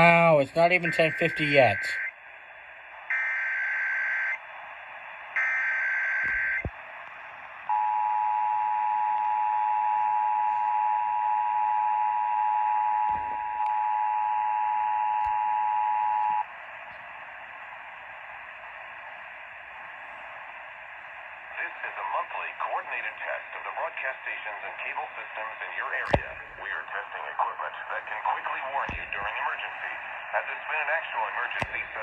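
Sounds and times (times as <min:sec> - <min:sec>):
radio hiss: 0:00.0 - 0:02.0, 0:16.5 - 0:32.0.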